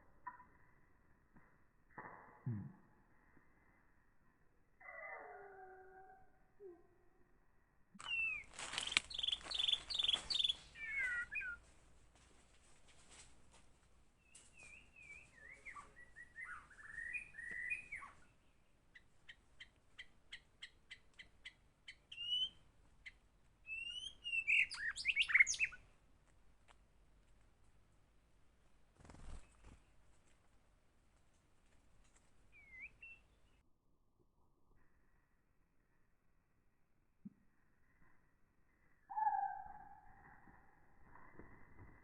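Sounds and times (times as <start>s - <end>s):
bird singing whistles: 8.1s - 8.5s, 9.1s - 11.6s, 14.7s - 18.2s, 22.1s - 22.6s, 23.7s - 25.8s, 32.6s - 33.3s, 39.1s - 40.1s.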